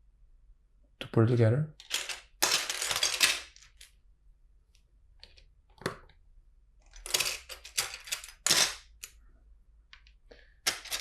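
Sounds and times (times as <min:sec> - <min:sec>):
plastic bricks clattering and clicking: 0:01.8 - 0:04.0, 0:06.8 - 0:09.2, 0:09.9 - 0:11.0.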